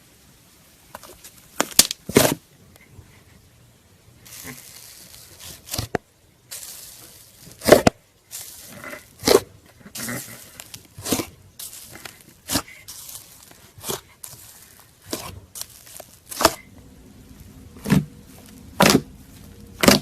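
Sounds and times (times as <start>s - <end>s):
slime squished by hand: 6.5s - 16.7s, 17.7s - 20.0s
slime popping: 17.8s - 19.2s, 19.8s - 20.0s.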